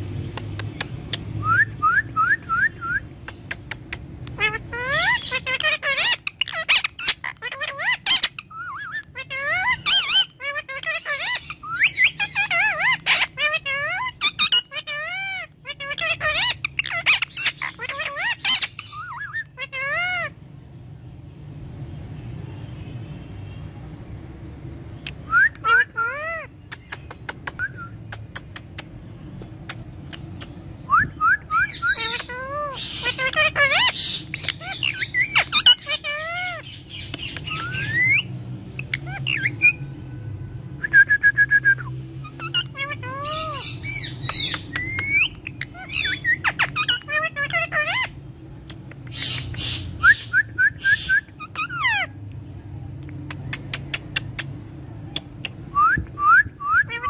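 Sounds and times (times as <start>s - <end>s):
parrot clicking: 0.3s - 1.3s, 26.7s - 30.6s, 44.2s - 45.3s, 53.0s - 54.5s
parrot whistling: 1.4s - 3.1s, 25.1s - 26.5s, 27.5s - 28.0s, 30.9s - 36.6s, 37.2s - 39.8s, 40.8s - 48.1s, 49.2s - 52.1s, 55.4s - 57.0s
parrot call: 4.3s - 20.4s, 25.2s - 28.0s, 30.9s - 39.8s, 42.2s - 48.2s, 55.1s - 57.0s.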